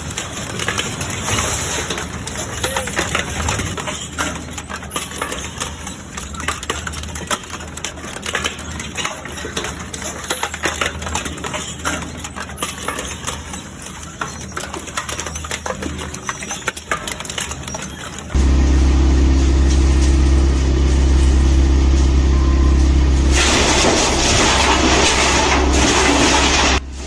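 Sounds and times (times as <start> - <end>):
wood chipper engine drone: 18.4 - 27.0.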